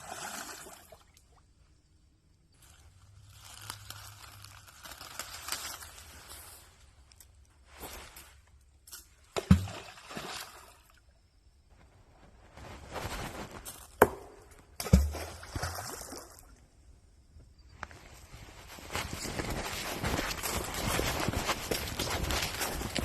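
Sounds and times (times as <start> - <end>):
rocks splashing into water: 9.3 - 10.9, 14.0 - 16.6.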